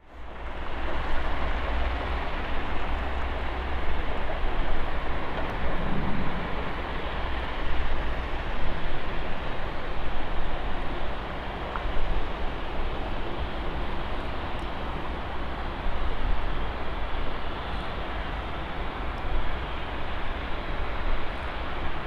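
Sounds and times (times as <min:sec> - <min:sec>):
jet engines running: 0:04.2 - 0:09.2.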